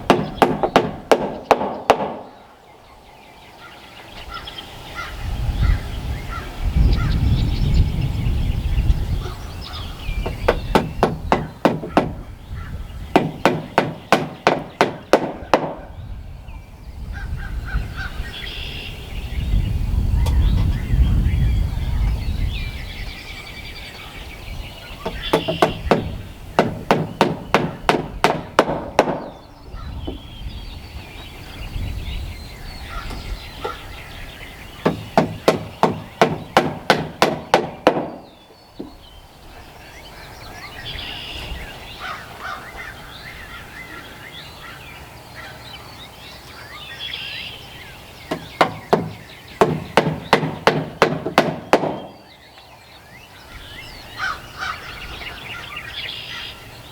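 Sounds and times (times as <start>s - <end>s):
hammer striking nails: 0.0s - 2.3s, 10.2s - 12.2s, 13.1s - 15.9s, 25.0s - 29.4s, 34.8s - 38.9s, 48.3s - 52.2s
birds calling: 0.0s - 56.9s.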